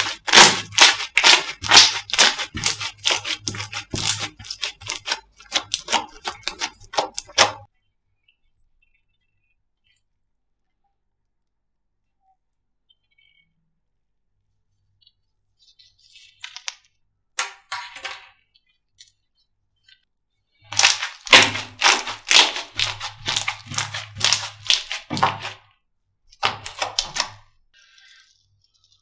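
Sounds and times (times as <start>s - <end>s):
slime squeezed by hand: 0.0s - 7.7s, 20.7s - 25.6s, 26.3s - 27.4s.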